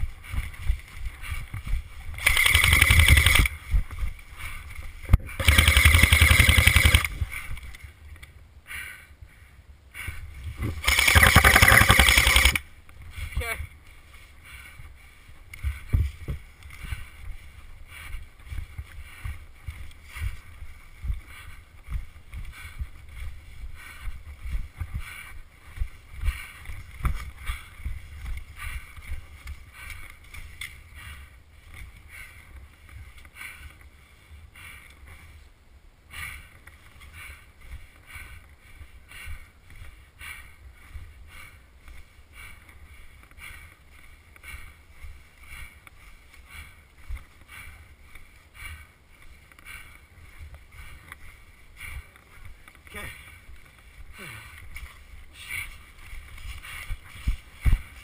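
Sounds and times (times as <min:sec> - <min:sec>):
footsteps crunching through snow: 0:36.4 - 0:58.0.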